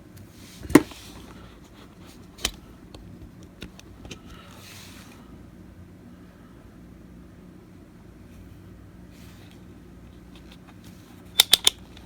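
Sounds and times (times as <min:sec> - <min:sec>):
multimeter clicks: 0:11.4 - 0:12.0.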